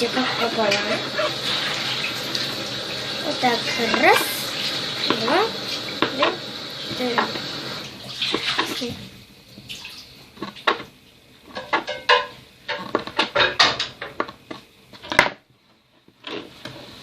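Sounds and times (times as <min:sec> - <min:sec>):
dishes clinking: 0:11.5 - 0:14.3.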